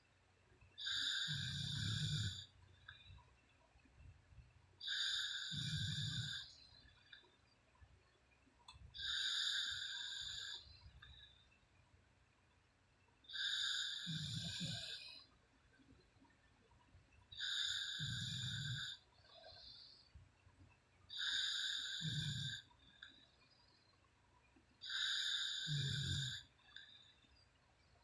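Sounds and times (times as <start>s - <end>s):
woman snoring: 0.8s - 2.5s, 4.8s - 6.6s, 9.0s - 10.6s, 13.3s - 15.1s, 17.4s - 19.7s, 21.1s - 22.7s, 24.8s - 26.5s.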